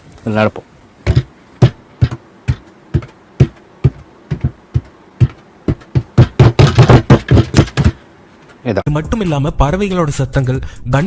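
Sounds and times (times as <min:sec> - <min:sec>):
footsteps on stairs: 0:01.0 - 0:08.0.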